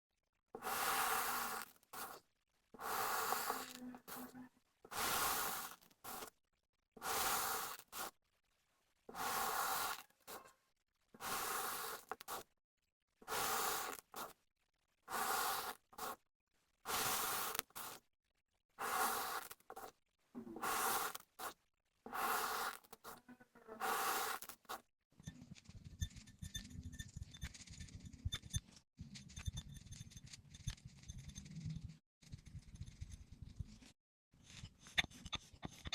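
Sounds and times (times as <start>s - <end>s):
sand being scraped: 0.6s - 2.2s, 2.8s - 6.3s, 7.0s - 8.2s, 9.1s - 10.5s, 11.2s - 12.5s, 13.3s - 14.4s, 15.1s - 16.2s, 16.9s - 18.0s, 18.8s - 19.9s, 20.6s - 23.2s, 23.8s - 24.8s.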